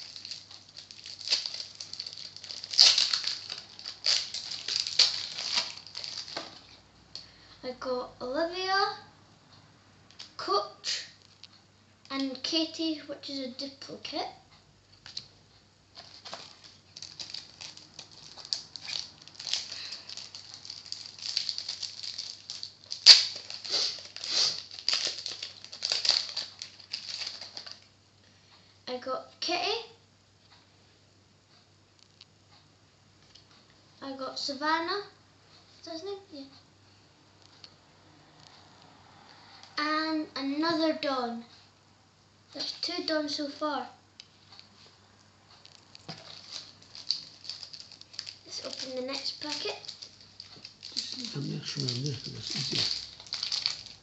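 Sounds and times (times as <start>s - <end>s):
sharp crackle: 0.0s - 6.6s, 16.0s - 27.9s, 45.5s - 54.0s
plastic wrapper crinkling: 0.0s - 7.3s, 15.0s - 15.3s, 15.9s - 27.9s, 45.6s - 54.0s.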